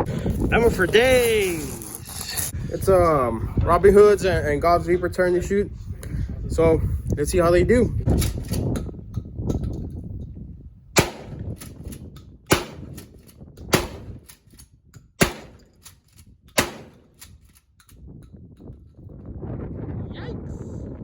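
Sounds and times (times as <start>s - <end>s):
gunshots: 11.0s - 14.4s, 15.2s - 15.9s, 16.6s - 17.3s.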